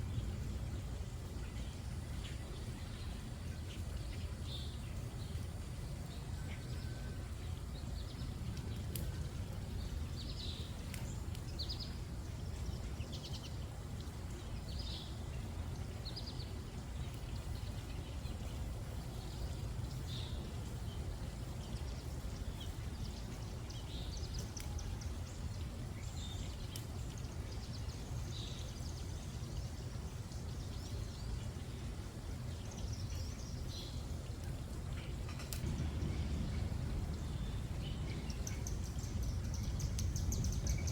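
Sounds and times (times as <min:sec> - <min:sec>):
steady low rumble: 0:00.0 - 0:14.8, 0:27.2 - 0:40.9
small birds chirping: 0:00.0 - 0:40.9.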